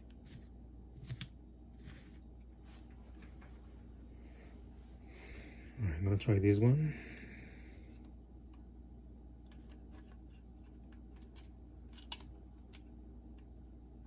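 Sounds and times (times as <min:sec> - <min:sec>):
small plastic parts clicking: 0:10.9 - 0:12.9.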